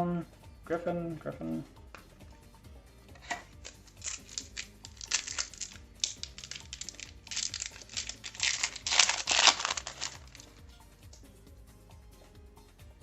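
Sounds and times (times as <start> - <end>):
soft background music: 0.0 - 13.0
foil wrapper crinkling and tearing: 3.2 - 10.5.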